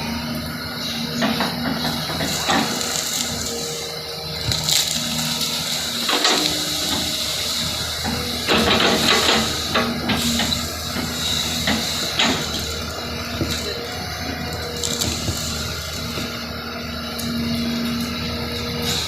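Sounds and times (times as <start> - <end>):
backhoe engine running: 0.0 - 19.0
backhoe digging knocks: 1.2 - 3.4, 6.0 - 7.3, 8.0 - 16.4.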